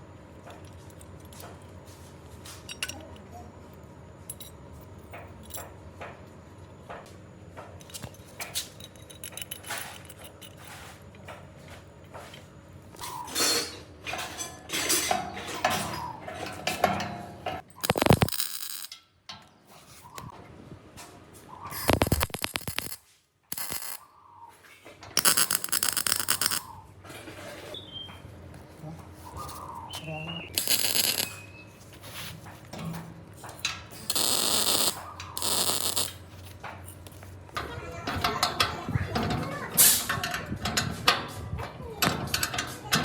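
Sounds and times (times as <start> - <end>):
metal tools clinking: 2.4 - 5.8, 7.8 - 11.3, 13.0 - 20.0, 21.7 - 24.0, 25.1 - 26.7, 29.4 - 39.4.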